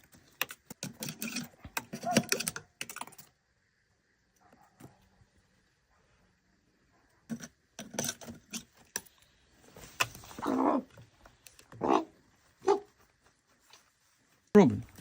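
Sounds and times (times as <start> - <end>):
raven calling: 10.3 - 11.0, 11.7 - 12.9.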